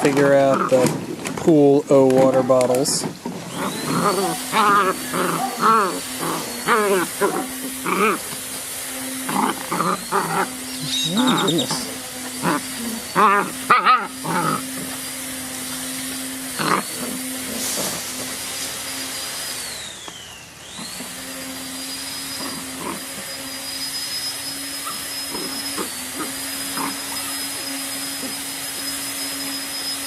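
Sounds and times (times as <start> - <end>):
motor-driven machine humming: 0.0 - 30.0
dog vocalizing: 3.5 - 8.4, 9.0 - 15.0, 16.6 - 17.6, 24.8 - 27.5.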